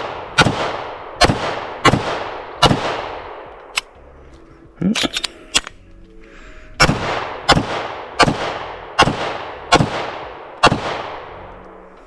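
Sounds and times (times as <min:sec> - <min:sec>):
pistol shots with echo: 0:00.0 - 0:04.0, 0:06.8 - 0:11.8.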